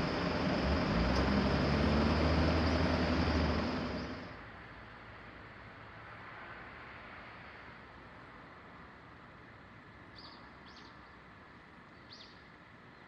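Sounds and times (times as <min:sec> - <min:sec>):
low hum: 0:00.0 - 0:04.4
train rumbling past: 0:00.0 - 0:04.6.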